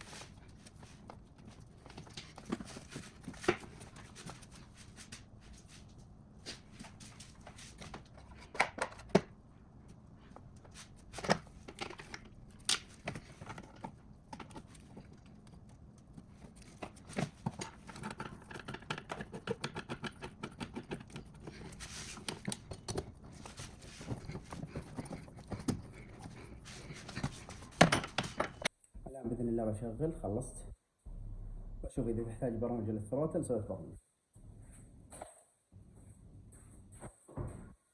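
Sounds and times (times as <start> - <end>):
hand tools and parts clattering: 10.6 - 28.7.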